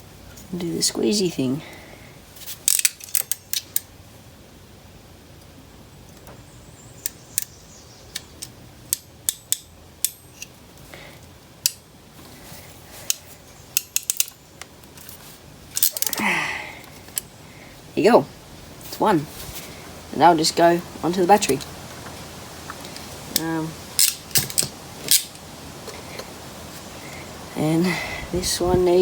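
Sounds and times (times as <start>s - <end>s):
small metal connectors handled: 2.4s - 3.9s, 11.6s - 17.3s, 22.8s - 26.3s
crimping tool clicking: 13.1s - 15.0s.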